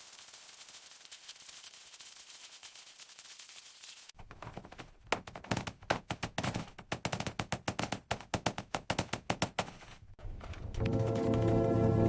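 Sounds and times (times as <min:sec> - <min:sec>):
rapid hammering knocks and taps: 0:05.1 - 0:09.9.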